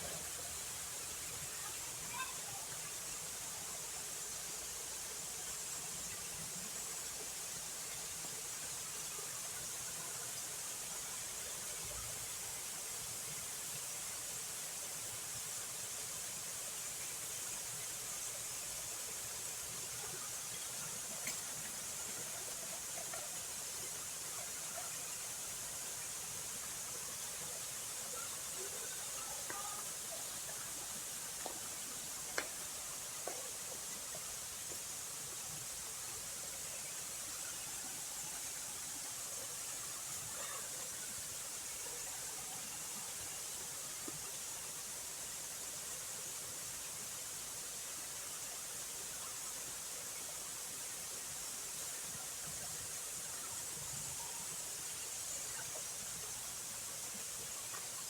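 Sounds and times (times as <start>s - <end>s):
high-pitched background hiss: 0.0s - 58.0s
faint click: 21.2s - 21.6s.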